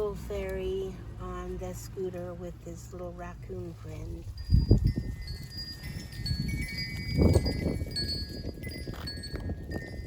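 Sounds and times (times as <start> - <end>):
low uneven rumble: 0.0 - 10.0
wind chimes ringing: 4.3 - 10.0.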